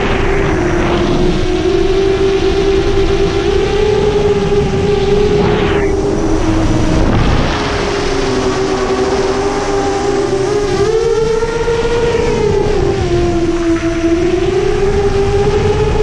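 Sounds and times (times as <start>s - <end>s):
quadcopter motors buzzing: 0.1s - 16.0s
wind rushing past: 4.4s - 12.7s.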